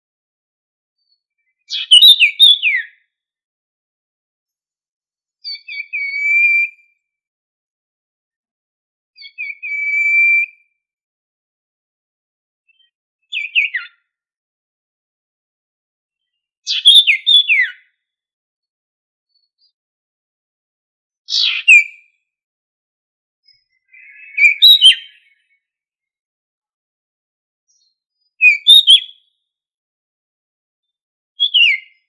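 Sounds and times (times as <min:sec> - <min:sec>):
songbird singing: 0:01.0 - 0:03.2, 0:05.4 - 0:07.0, 0:09.2 - 0:10.7, 0:12.7 - 0:14.1, 0:16.2 - 0:18.0, 0:21.3 - 0:22.2, 0:23.4 - 0:25.7, 0:27.7 - 0:29.4, 0:30.8 - 0:32.0.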